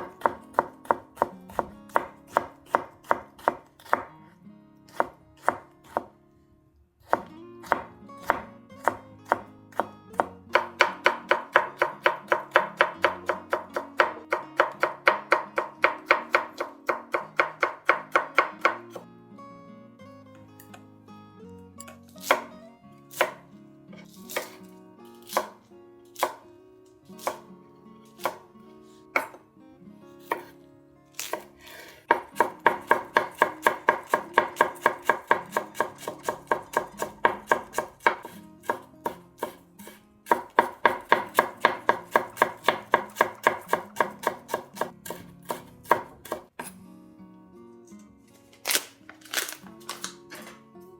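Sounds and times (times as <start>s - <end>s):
knife chopping on cutting board: 0.0s - 4.1s, 4.9s - 6.1s, 7.0s - 18.9s, 24.3s - 24.6s, 25.2s - 25.6s, 26.2s - 26.4s, 27.2s - 27.4s, 28.2s - 28.4s, 29.2s - 29.4s, 30.2s - 30.6s, 31.2s - 46.7s.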